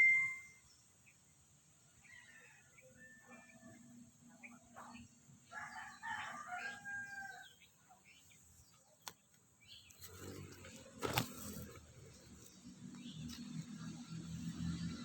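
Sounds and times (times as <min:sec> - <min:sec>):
rustling: 0:09.9 - 0:12.6.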